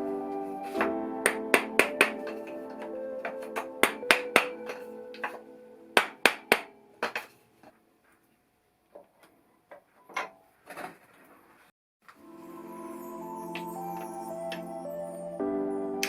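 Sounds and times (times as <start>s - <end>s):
hammer striking metal: 1.3s - 2.5s.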